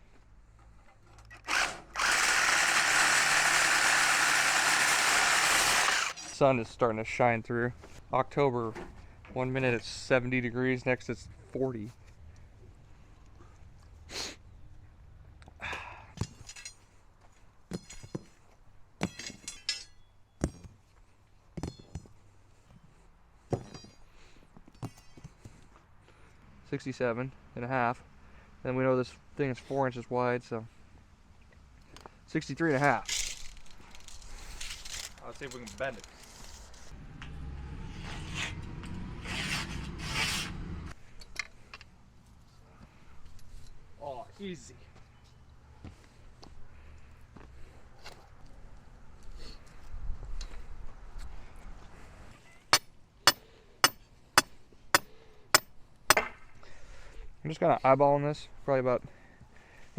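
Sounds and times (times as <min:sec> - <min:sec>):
steel rebar creaking and scraping: 0:32.7 - 0:40.6.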